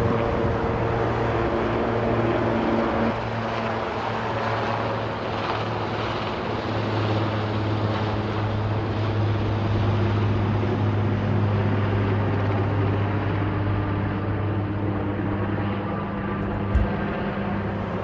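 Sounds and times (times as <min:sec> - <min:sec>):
helicopter engine and rotor drone: 0:00.0 - 0:18.0.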